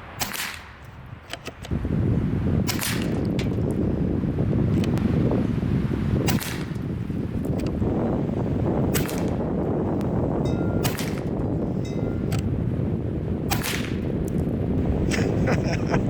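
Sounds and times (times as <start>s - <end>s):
air rifle shots: 0.0s - 1.7s, 2.6s - 3.8s, 6.2s - 7.7s, 8.8s - 9.7s, 10.7s - 12.5s, 13.4s - 14.4s
wind buffeting microphone: 0.0s - 16.0s.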